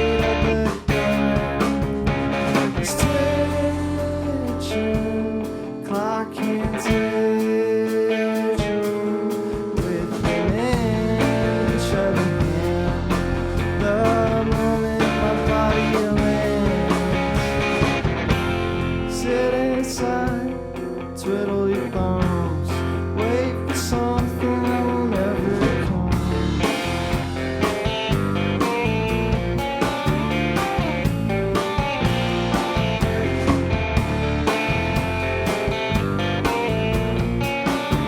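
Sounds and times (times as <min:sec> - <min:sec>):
person singing: 0:00.0 - 0:01.8, 0:02.8 - 0:18.0, 0:18.8 - 0:26.8, 0:32.4 - 0:33.8
low bass: 0:00.0 - 0:07.3, 0:09.8 - 0:38.0
drums: 0:00.0 - 0:38.0
guitar: 0:00.0 - 0:38.0.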